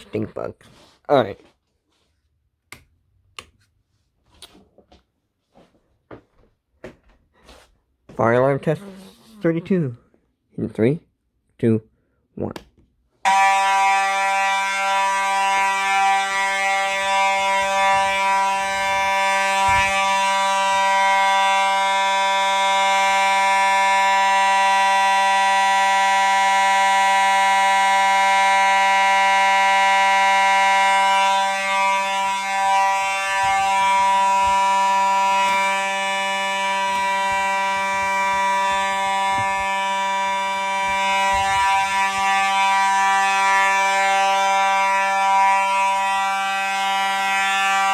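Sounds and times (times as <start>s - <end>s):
fire alarm buzzing tone: 13.2s - 47.9s.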